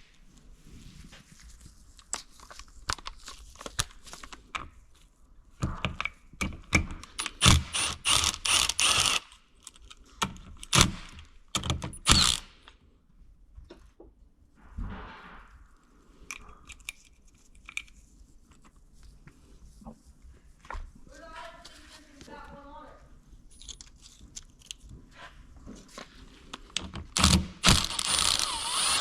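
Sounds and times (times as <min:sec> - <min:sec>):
ratchet wrench clicking: 0:07.2 - 0:09.2, 0:12.1 - 0:12.5, 0:27.2 - 0:29.0.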